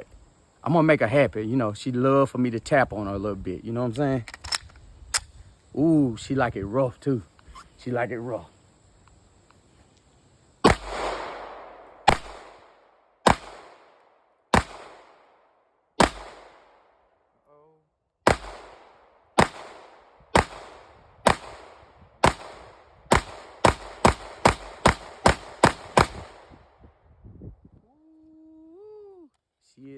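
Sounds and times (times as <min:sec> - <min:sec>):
pistol shots echoing: 0:10.6 - 0:15.3, 0:16.0 - 0:16.8, 0:18.3 - 0:26.5.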